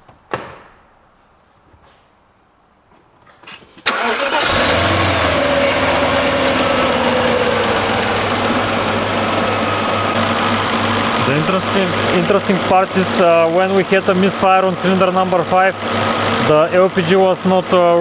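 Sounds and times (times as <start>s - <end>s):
car engine starting and idling: 3.6s - 18.0s.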